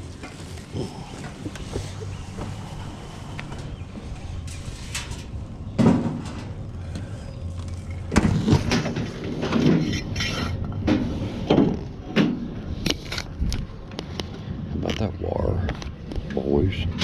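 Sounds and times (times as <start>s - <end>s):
low steady engine hum: 0.0s - 17.0s
scrap metal knocks and clanks: 1.8s - 7.0s, 7.9s - 12.6s.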